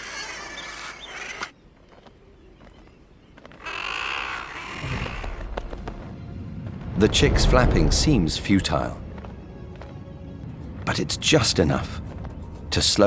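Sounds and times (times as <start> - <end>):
seabirds calling: 0.0 - 5.8
low rumble: 4.9 - 9.7.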